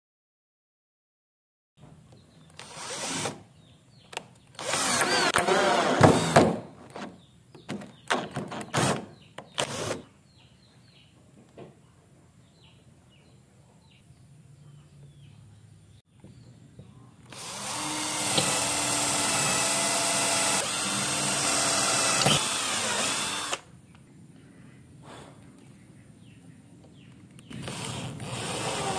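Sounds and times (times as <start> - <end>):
electric drill running: 2.6 - 3.4, 4.6 - 6.4, 17.3 - 23.7, 27.5 - 28.9.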